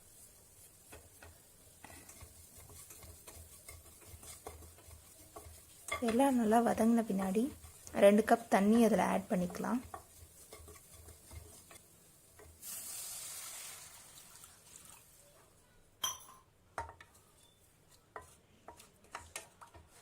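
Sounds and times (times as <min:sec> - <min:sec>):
water hissing in hot pan: 0:00.0 - 0:15.4.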